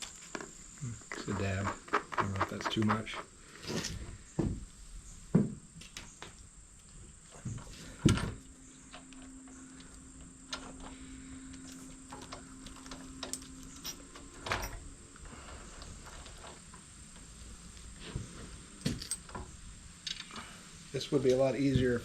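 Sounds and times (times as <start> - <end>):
faint steady hum: 0.0 - 22.0
knocks and clinks of tools: 8.0 - 16.6.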